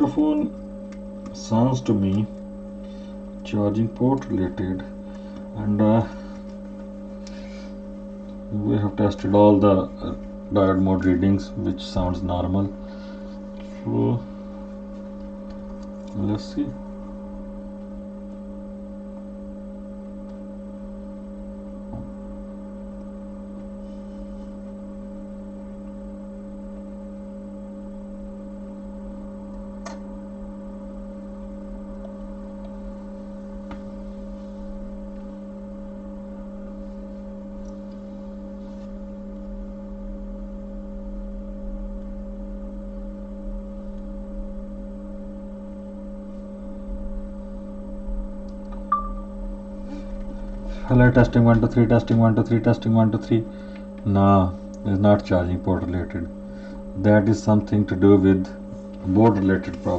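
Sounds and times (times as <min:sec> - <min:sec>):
steady electrical hum: 0:00.0 - 0:59.9.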